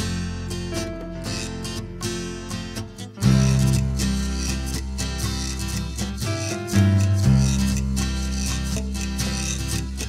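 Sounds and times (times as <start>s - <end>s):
strummed acoustic guitar music: 0.0s - 10.0s
heavy bass: 3.2s - 10.0s.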